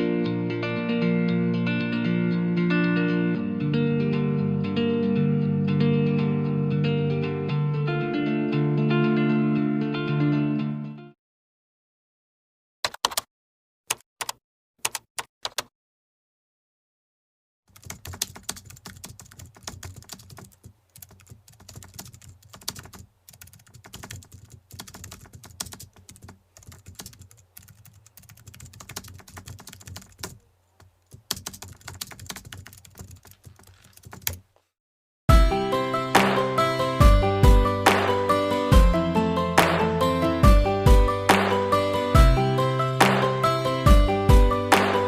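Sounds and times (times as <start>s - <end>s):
typing on computer keyboard: 12.9s - 13.3s, 13.9s - 15.7s, 17.7s - 34.4s.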